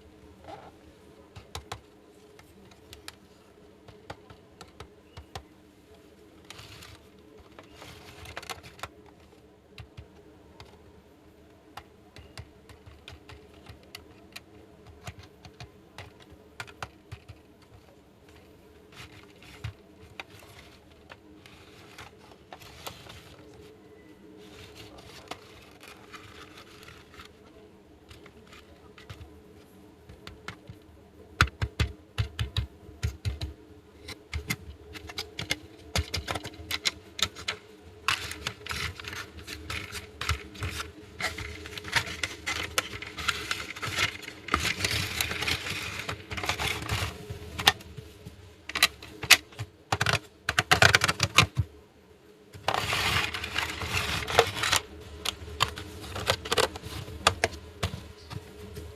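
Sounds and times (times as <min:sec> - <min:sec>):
rustling: 0:52.6 - 0:58.9.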